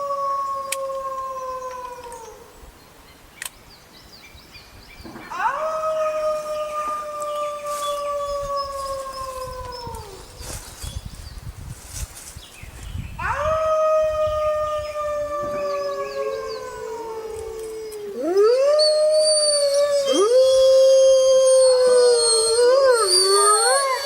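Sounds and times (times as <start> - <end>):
wolves howling: 0.0 - 2.4, 5.3 - 10.3, 13.2 - 24.0.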